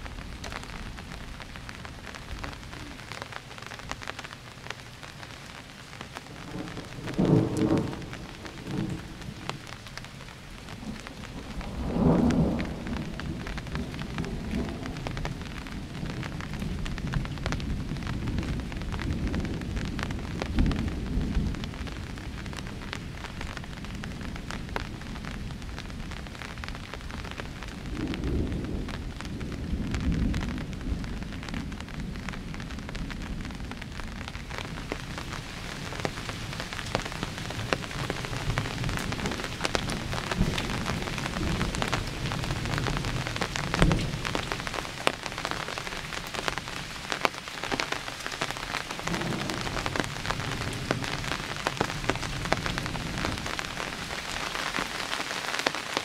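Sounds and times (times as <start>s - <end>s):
rain pattering: 0.0s - 56.0s
thunder rumbling: 5.1s - 56.0s
sharp thunder crack: 6.5s - 9.5s, 10.9s - 16.3s.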